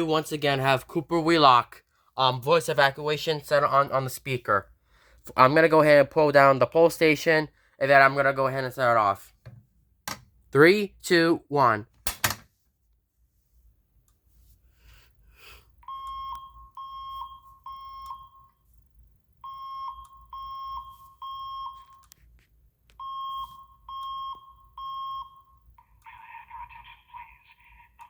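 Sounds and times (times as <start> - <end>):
fire alarm beeps: 15.8 - 18.7, 19.3 - 22.2, 23.0 - 25.8.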